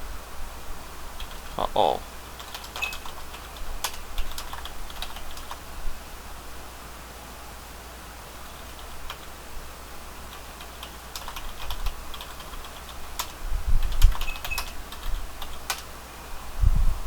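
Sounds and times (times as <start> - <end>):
typing on keyboard: 1.2 - 1.6, 2.4 - 5.6, 8.6 - 9.3, 10.3 - 15.9.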